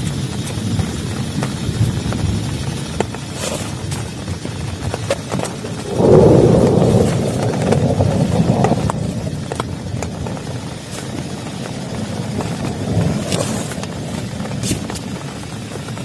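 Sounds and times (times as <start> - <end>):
heavy rain: 0.0 - 16.0
thunder rumbling: 0.0 - 16.0.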